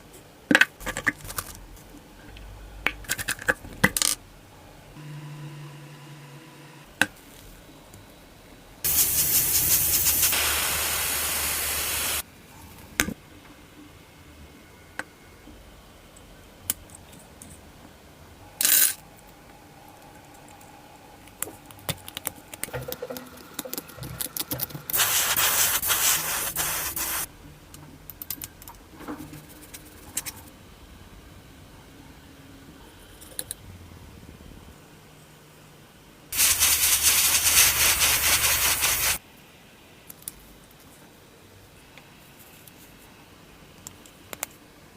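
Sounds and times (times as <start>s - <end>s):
loud spraying hiss: 8.9s - 12.2s, 24.9s - 27.3s, 36.4s - 39.2s.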